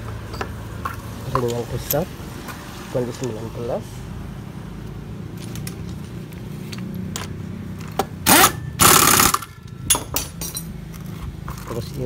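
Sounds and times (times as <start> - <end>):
light clicks of metal parts: 0.0 - 3.5, 4.8 - 8.1, 9.6 - 12.0.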